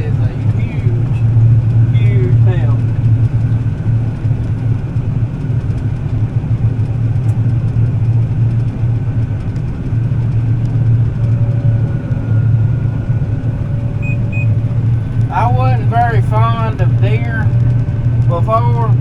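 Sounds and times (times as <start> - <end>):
combine harvester engine drone: 0.0 - 19.0
faint high whine: 13.4 - 17.5.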